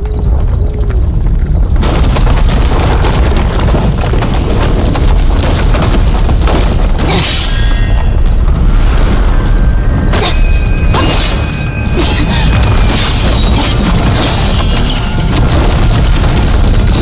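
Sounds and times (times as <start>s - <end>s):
deep rumbling booms: 0.0s - 7.1s, 12.5s - 17.0s.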